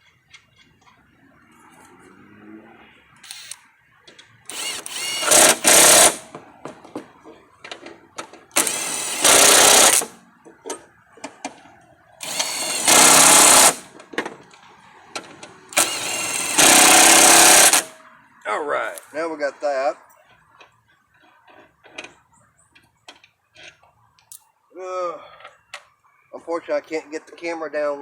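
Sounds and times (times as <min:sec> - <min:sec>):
impact wrench hammering: 0:04.5 - 0:06.4, 0:08.6 - 0:10.1, 0:12.2 - 0:13.9, 0:15.8 - 0:18.0.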